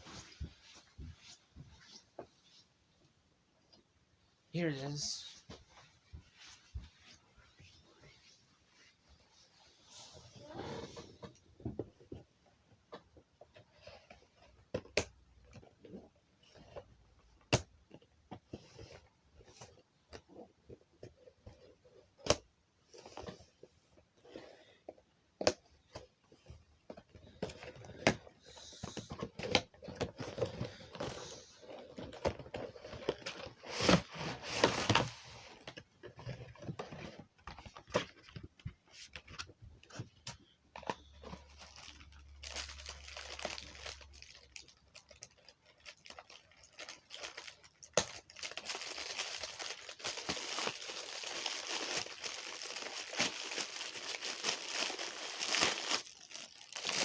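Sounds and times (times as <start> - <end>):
paper packaging crinkling: 41.3 - 57.0.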